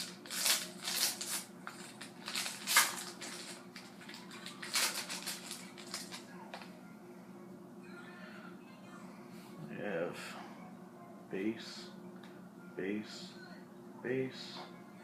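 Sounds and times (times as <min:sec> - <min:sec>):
card pack wrapper crinkling: 0:00.0 - 0:06.7
cards rustling: 0:00.0 - 0:06.7.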